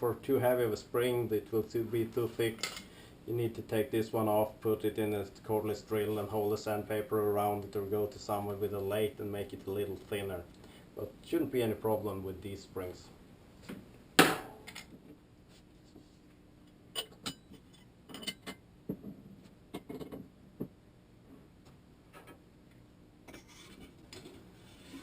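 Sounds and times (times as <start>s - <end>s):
sharp knock: 14.2s - 14.6s
metal parts clinking and tapping: 17.0s - 18.6s.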